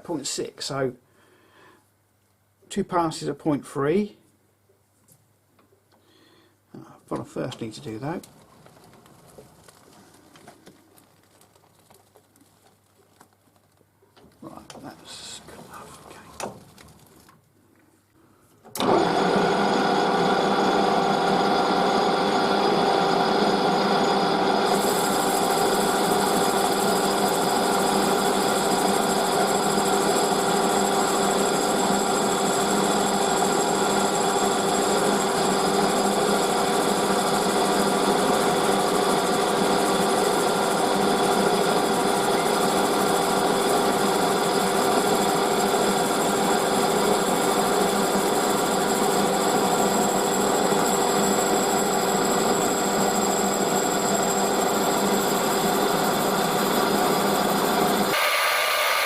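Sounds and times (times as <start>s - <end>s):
metal lathe whining: 18.8s - 59.0s
high hiss: 58.1s - 59.0s.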